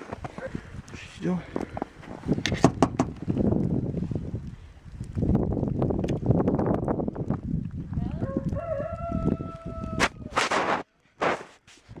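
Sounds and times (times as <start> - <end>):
rooster crowing: 8.1 - 10.4
sharp crack: 10.0 - 11.6
rustling noise: 10.0 - 12.0.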